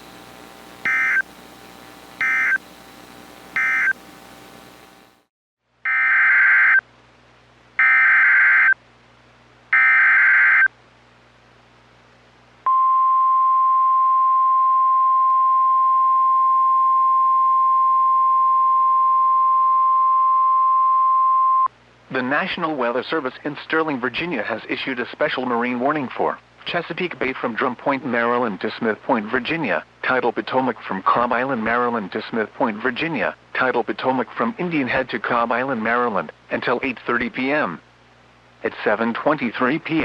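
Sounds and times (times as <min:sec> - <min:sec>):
digital data bursts: 0:00.0 - 0:05.2.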